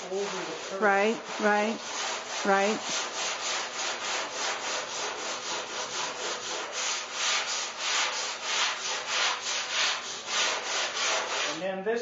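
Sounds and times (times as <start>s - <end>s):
sandpaper scraping car hood: 0.0s - 11.6s.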